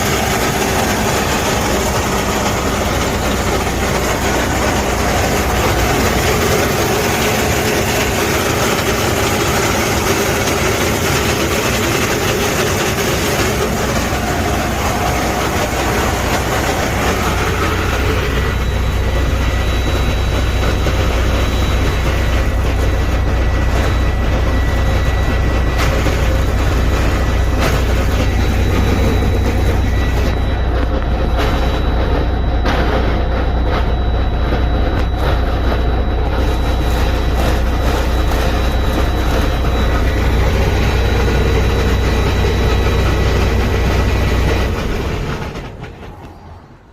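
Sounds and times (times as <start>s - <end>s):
diesel engine running: 0.0s - 46.9s
transmission grinding noise: 0.0s - 46.9s.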